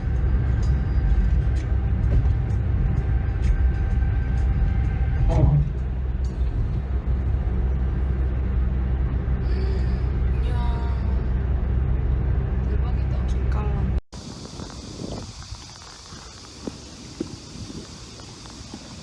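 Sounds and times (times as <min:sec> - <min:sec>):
vehicle interior rumble: 0:00.0 - 0:19.0.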